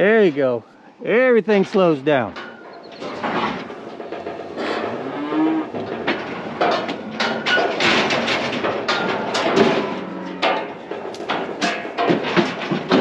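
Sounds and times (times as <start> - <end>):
sharp knocks and rattles: 1.2 - 13.0
cattle mooing: 4.4 - 5.8.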